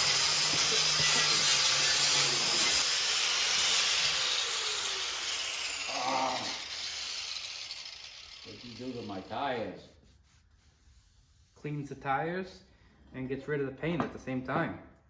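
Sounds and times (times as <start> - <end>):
power tool whining on rubber: 0.0 - 9.2.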